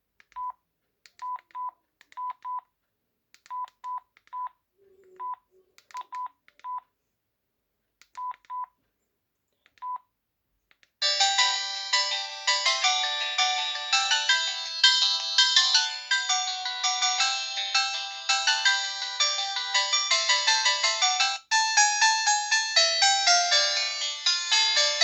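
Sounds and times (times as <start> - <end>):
phone keypress beeps: 3.5 - 4.5, 5.2 - 6.8, 8.2 - 8.7
phone ringtone melody: 11.0 - 25.0.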